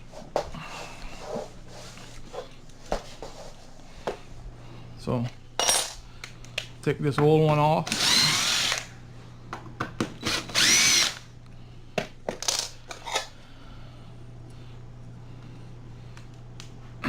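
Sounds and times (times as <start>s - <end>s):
power drill spinning: 7.8s - 8.9s, 10.2s - 11.3s.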